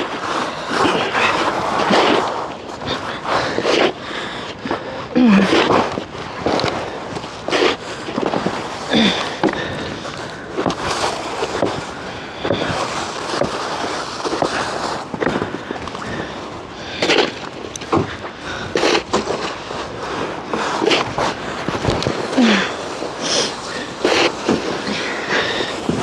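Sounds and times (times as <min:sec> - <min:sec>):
crunching and scraping in snow: 0:00.0 - 0:26.0.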